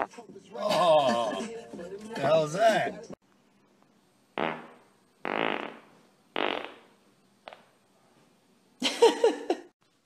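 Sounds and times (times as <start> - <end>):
man farting: 4.4 - 7.7.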